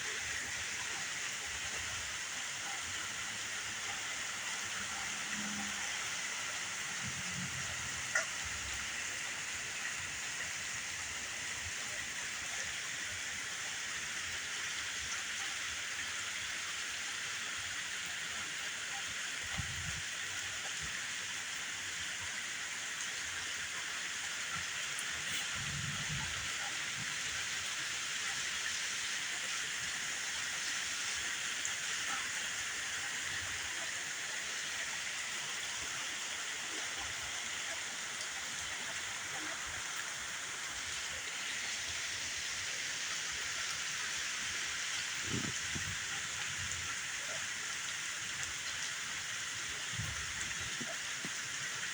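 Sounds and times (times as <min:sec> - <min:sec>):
steady rain falling: 0:00.0 - 0:51.9.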